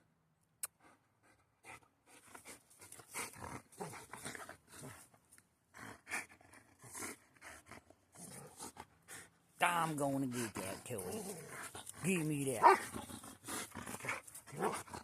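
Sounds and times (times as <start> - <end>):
dog panting: 0.8 - 5.1, 5.7 - 9.4, 10.1 - 15.0
dog growling in play: 3.1 - 5.1, 5.7 - 9.3, 10.6 - 15.0.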